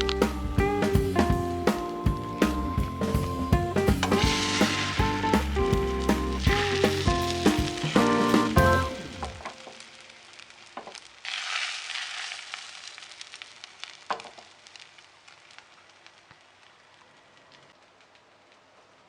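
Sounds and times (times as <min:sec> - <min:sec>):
fat crackling and popping: 0:00.0 - 0:19.0
food sizzling in a frying pan: 0:04.2 - 0:05.2, 0:06.5 - 0:15.6.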